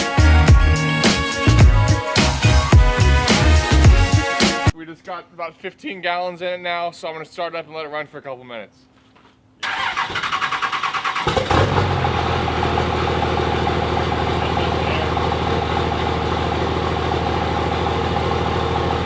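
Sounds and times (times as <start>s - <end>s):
diesel engine cranking: 9.6s - 19.0s
diesel engine idling: 11.2s - 19.0s.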